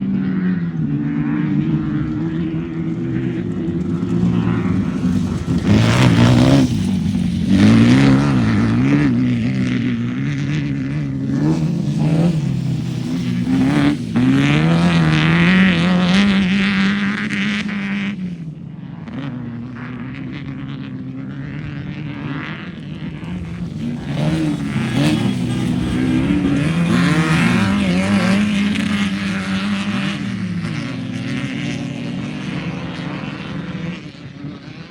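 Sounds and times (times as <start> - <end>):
race vehicle engine revving: 1.3 - 18.2, 21.6 - 34.2.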